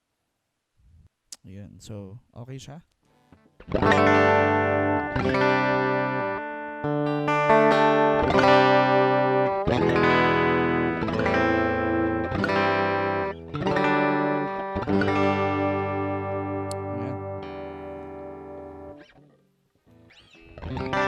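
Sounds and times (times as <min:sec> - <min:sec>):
electric guitar chords strummed: 0:03.3 - 0:21.0.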